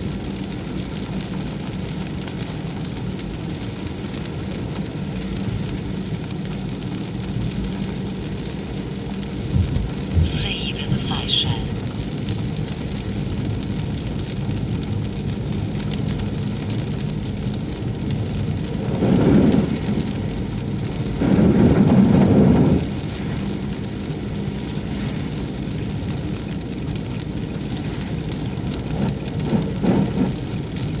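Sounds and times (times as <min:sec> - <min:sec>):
rain noise: 0:00.0 - 0:31.0
car road and engine rumble: 0:11.8 - 0:31.0.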